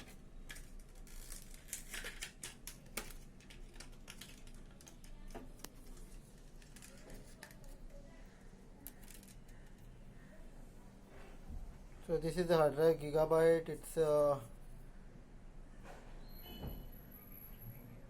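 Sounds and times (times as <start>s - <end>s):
faint low hum: 2.6s - 16.1s.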